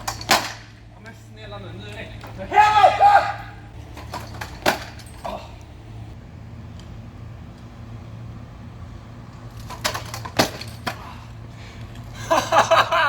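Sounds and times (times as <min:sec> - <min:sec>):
scooter clacking on asphalt: 0:00.0 - 0:01.2, 0:03.8 - 0:05.2, 0:09.3 - 0:11.0
steady low hum: 0:00.0 - 0:13.0.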